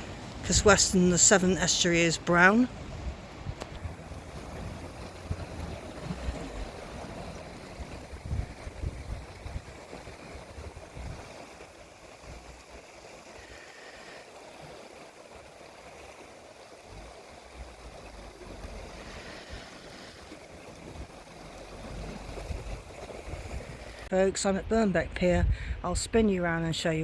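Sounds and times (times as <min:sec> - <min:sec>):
wind buffeting microphone: 0:00.0 - 0:13.0, 0:20.3 - 0:26.7
rush of sea: 0:00.0 - 0:27.0.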